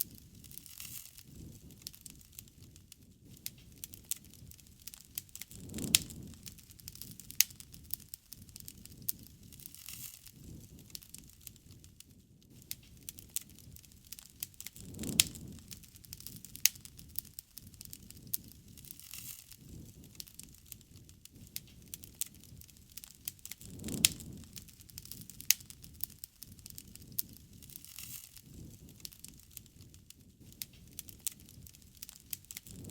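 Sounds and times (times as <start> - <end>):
campfire crackling and popping: 0.0 - 32.9.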